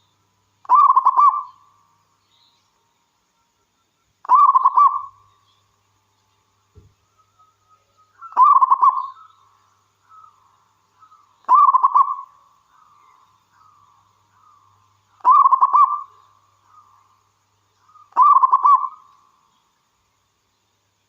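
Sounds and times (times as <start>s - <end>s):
dove cooing: 0.6s - 1.6s, 4.2s - 5.2s, 8.3s - 9.2s, 11.5s - 12.3s, 15.2s - 16.8s, 17.9s - 19.0s.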